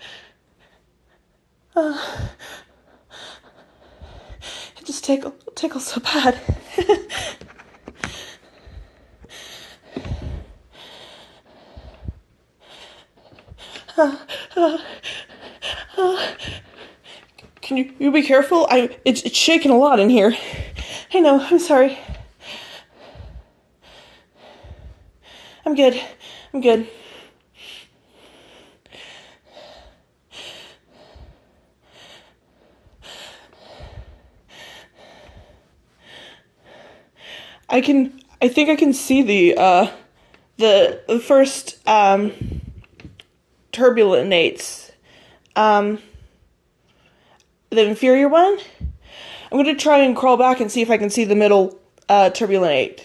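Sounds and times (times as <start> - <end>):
woman breathing and sniffing: 0.0 - 17.6, 20.2 - 37.7, 42.3 - 43.3.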